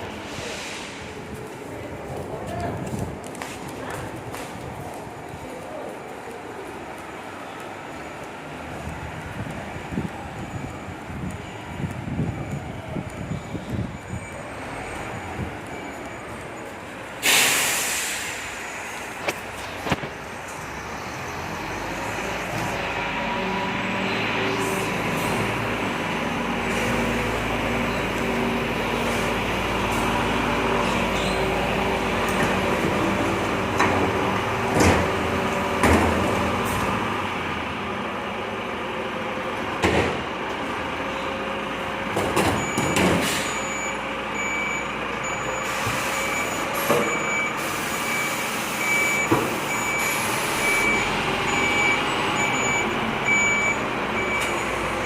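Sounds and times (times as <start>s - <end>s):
heavy truck running: 0.0s - 55.0s
short sharp hisses: 0.2s - 1.1s, 17.2s - 19.0s
repeating beep: 46.2s - 54.8s.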